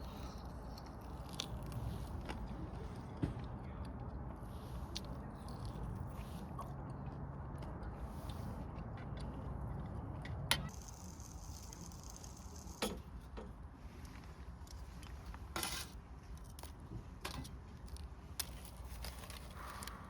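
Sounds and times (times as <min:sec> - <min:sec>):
small hard objects clicking: 0:10.6 - 0:13.0.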